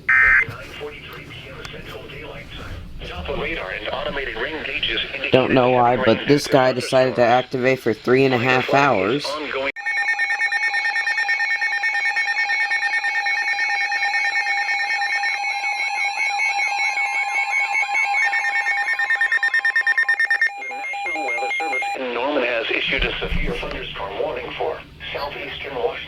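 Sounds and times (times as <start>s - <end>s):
warbling sweep tone: 0.0s - 6.7s
pulsing electronic alert tones: 16.4s - 22.0s.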